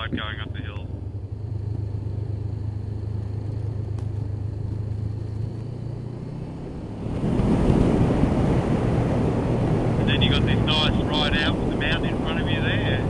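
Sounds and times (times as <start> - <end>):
motorcycle engine running: 0.0 - 10.7
wind noise rushing: 6.6 - 13.0.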